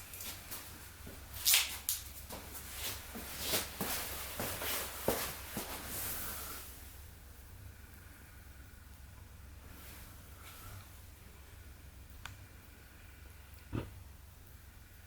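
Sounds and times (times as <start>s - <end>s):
wood fire crackling: 0.0s - 15.0s
fire hissing: 5.8s - 15.0s.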